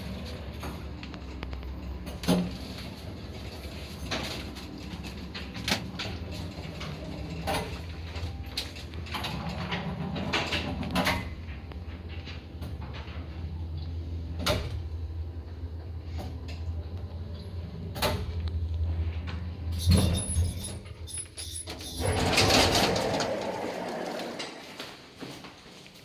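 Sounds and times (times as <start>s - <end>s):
lift low hum: 11.4s - 24.7s.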